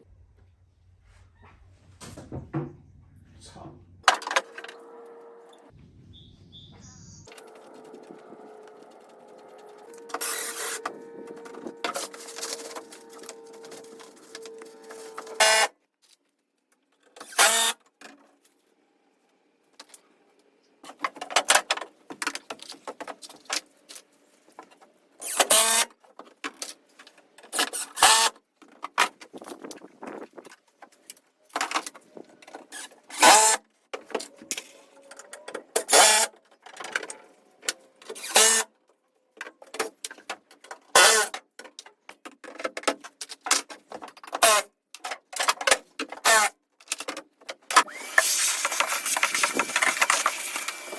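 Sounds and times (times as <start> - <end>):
power tool motor running: 7.3 - 15.6, 47.9 - 50.9.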